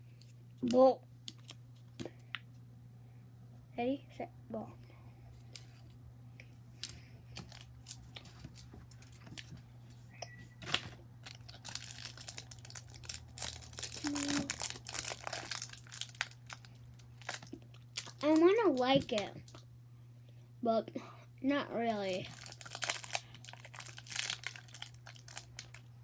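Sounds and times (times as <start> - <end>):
plastic wrapper crinkling: 0.6 - 2.1, 6.8 - 9.5, 10.6 - 19.6, 21.9 - 26.0.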